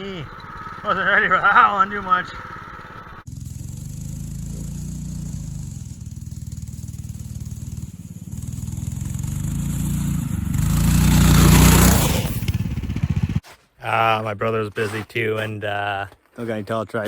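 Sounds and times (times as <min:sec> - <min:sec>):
dirt bike engine: 0:00.0 - 0:13.4.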